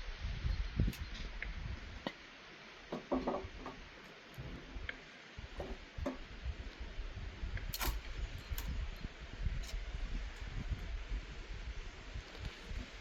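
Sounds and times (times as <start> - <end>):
light clicks and knocks: 2.9 - 6.3.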